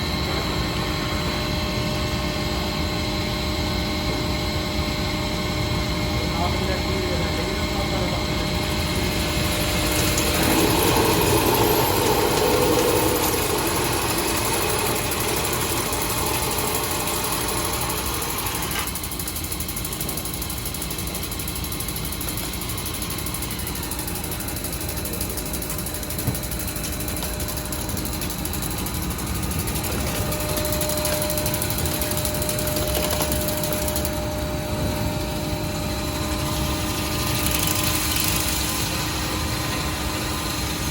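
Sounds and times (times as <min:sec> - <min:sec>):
drilling machine humming: 0:05.0 - 0:40.9.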